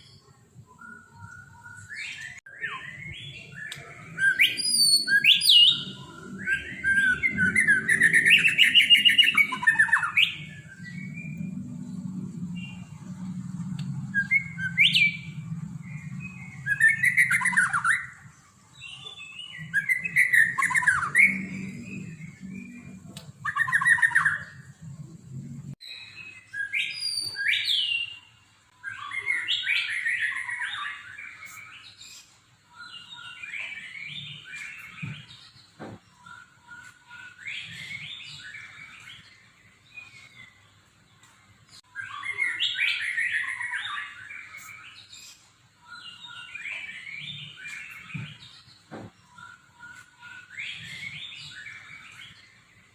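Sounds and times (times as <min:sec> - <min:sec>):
songbird warbling song: 0:00.0 - 0:52.9
low hum: 0:10.4 - 0:16.8.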